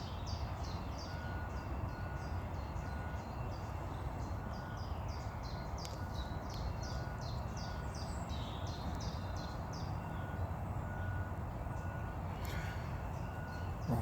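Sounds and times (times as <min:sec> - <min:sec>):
low outdoor rumble: 0:09.7 - 0:14.0.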